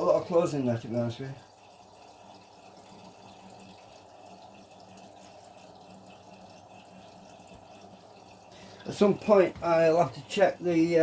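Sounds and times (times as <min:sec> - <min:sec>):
washing machine filling with water: 0:00.0 - 0:11.0.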